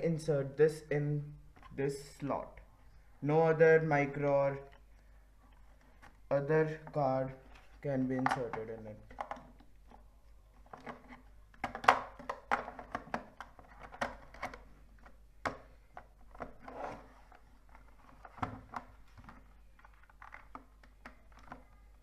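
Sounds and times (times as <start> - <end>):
plastic clicks and scraping: 7.4 - 22.0.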